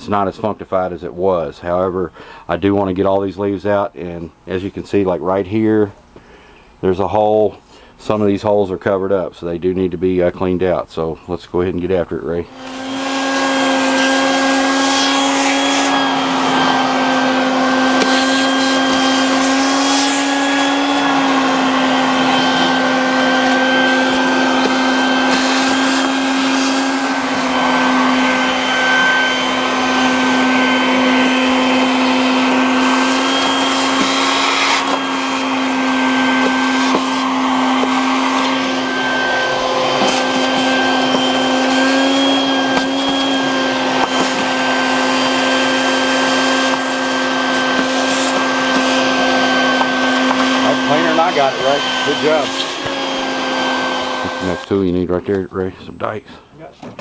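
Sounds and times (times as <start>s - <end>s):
shop vacuum whining: 12.3s - 55.4s.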